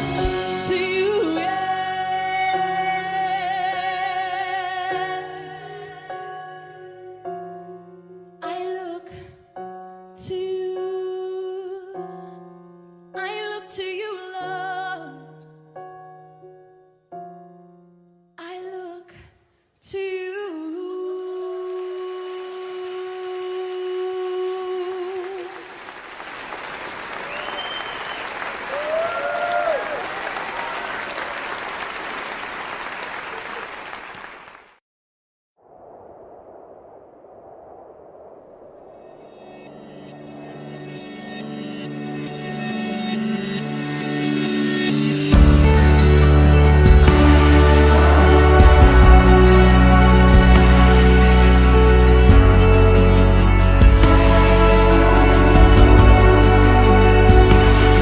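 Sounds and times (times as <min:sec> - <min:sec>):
piano chords: 0:00.0 - 0:18.2, 0:39.2 - 0:58.0
crowd applauding: 0:24.9 - 0:34.8, 0:45.8 - 0:58.0
crowd whoops: 0:27.1 - 0:32.0
person singing long notes: 0:46.0 - 0:52.7.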